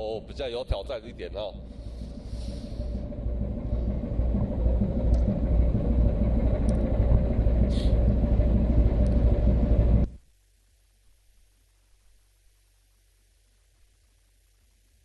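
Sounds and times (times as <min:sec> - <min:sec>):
ship low rumble: 0:00.0 - 0:10.2.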